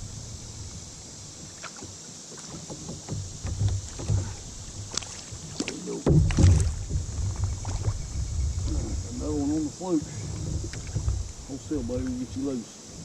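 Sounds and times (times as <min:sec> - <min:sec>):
water hissing around kayak: 0:00.0 - 0:13.0
small splashes: 0:00.6 - 0:12.6
knocks on kayak: 0:01.5 - 0:08.9.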